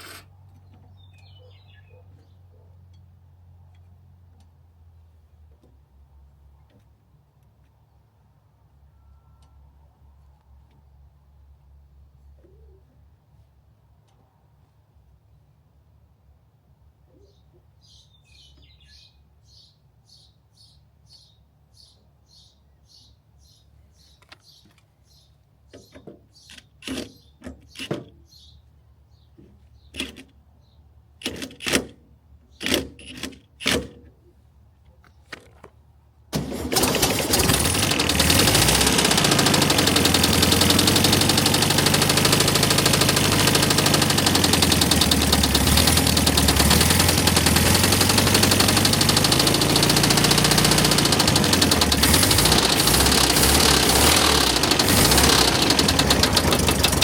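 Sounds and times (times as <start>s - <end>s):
engine starting and running: 0.0s - 0.7s, 26.5s - 28.1s, 31.2s - 32.0s, 36.3s - 57.0s.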